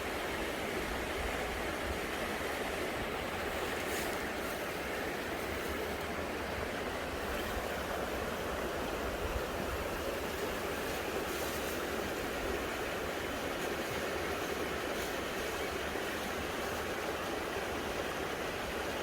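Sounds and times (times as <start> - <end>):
creek water running: 0.0 - 19.0.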